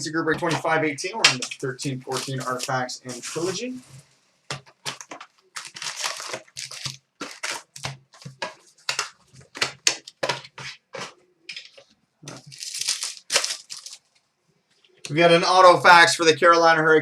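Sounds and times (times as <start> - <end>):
wrappers tearing and crinkling: 1.3 - 4.0, 4.7 - 11.1, 12.3 - 14.2.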